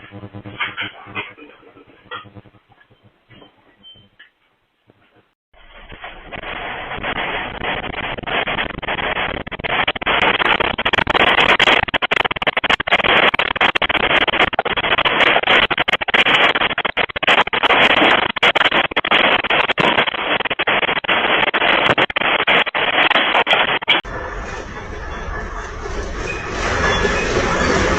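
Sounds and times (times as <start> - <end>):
earthquake rattling and rumbling: 5.6 - 27.9.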